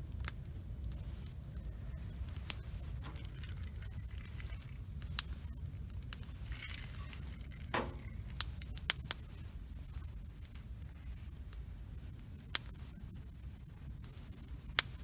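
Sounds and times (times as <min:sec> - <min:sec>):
low steady rumble: 0:00.0 - 0:12.1
campfire crackling and popping: 0:00.0 - 0:15.0.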